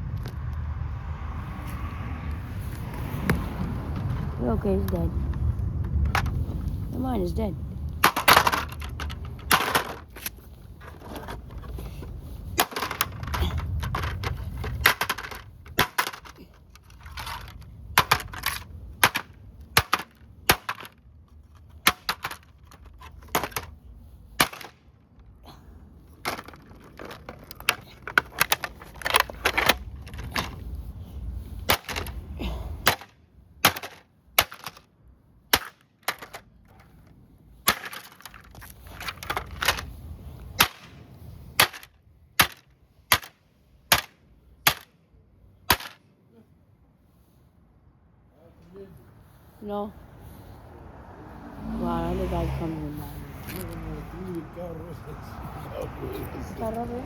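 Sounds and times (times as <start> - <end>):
plastic toy car being smashed: 8.0 - 10.3, 12.6 - 21.0, 21.8 - 23.7, 24.4 - 24.8, 31.7 - 32.1, 32.8 - 34.8, 37.7 - 39.9, 45.7 - 46.0.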